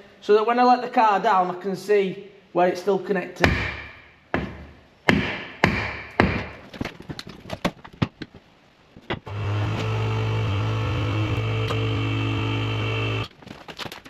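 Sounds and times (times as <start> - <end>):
electric lift motor humming: 9.3 - 13.3.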